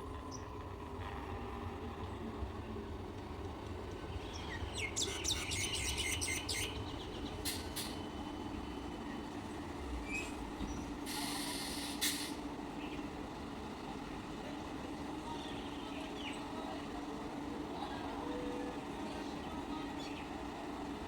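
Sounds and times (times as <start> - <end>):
road traffic rumbling: 0.0 - 19.4
hiss: 11.0 - 12.4.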